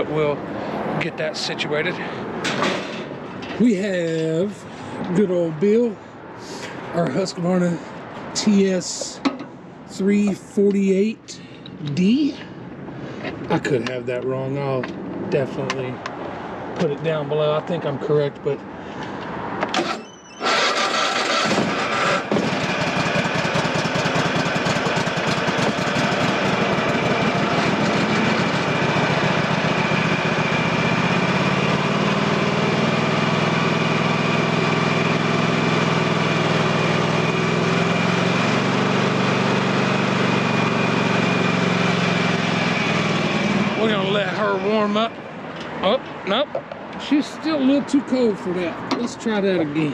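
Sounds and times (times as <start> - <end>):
lawn tractor engine starting: 19.7 - 28.9.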